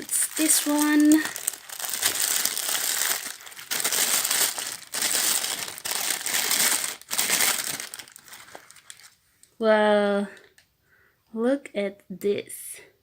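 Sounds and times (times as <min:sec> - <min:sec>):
packaging crinkling and rustling: 0:00.0 - 0:09.2.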